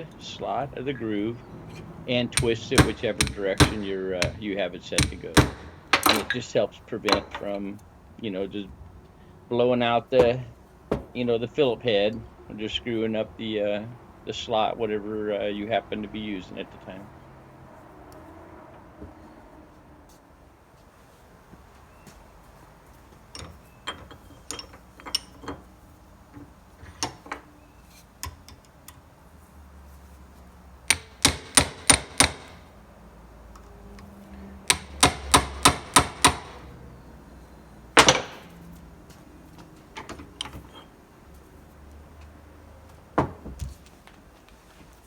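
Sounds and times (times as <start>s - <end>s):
handling taps and clicks: 1.6s - 7.9s, 22.9s - 29.1s, 30.8s - 32.7s, 33.5s - 36.8s, 38.0s - 40.9s
hammer striking impact driver: 2.4s - 6.4s, 30.9s - 32.7s, 34.6s - 36.7s, 38.0s - 38.5s.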